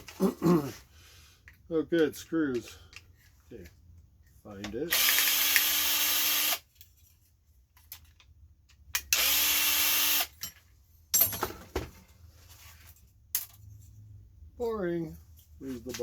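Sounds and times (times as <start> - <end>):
power drill whining: 4.9 - 6.6, 9.0 - 10.3.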